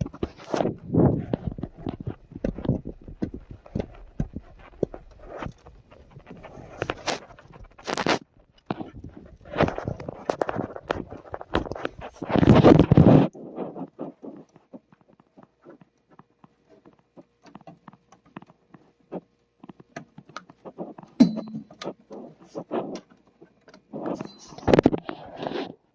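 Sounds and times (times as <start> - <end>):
faint steady hum: 0.0 - 25.9
clicks and taps on computer hardware: 9.9 - 25.1.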